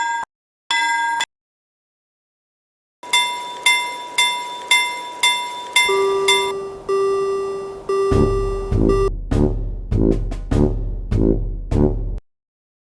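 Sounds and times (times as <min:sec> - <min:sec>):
railroad crossing bell: 0:03.0 - 0:09.1
low two-note tone: 0:05.8 - 0:09.1
bass-heavy music: 0:05.9 - 0:12.2.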